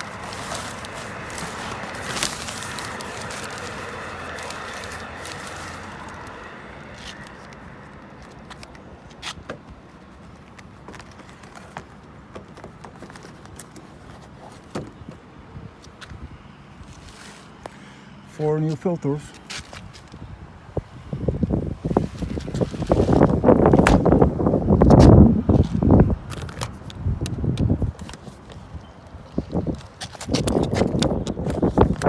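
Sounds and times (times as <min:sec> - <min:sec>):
steady mechanical noise: 0:00.0 - 0:32.0.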